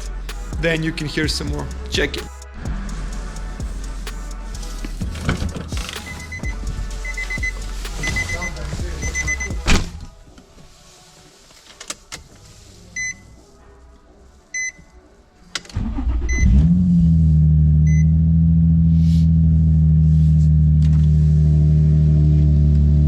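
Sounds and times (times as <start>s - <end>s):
car engine starting and idling: 0.0s - 10.1s, 15.6s - 23.0s
short electronic beeps: 6.0s - 9.6s.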